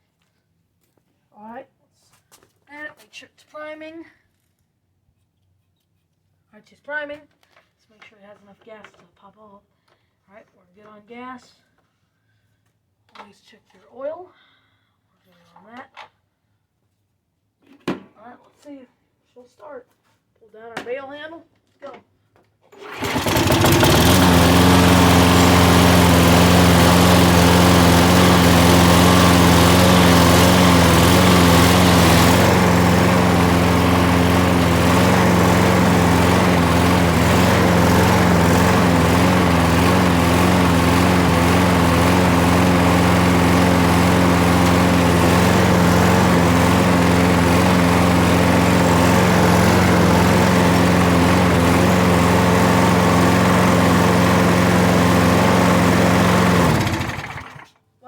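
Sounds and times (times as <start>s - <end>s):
lawn mower engine running: 22.8s - 57.7s.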